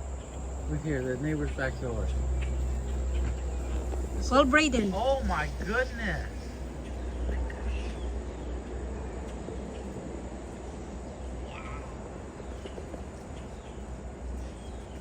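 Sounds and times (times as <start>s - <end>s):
blackbirds calling: 0.0s - 8.6s
steady low rumble: 0.0s - 11.1s.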